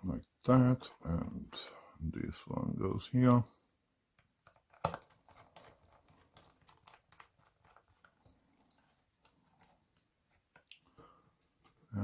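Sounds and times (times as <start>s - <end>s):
laptop cover being handled: 4.2s - 10.7s.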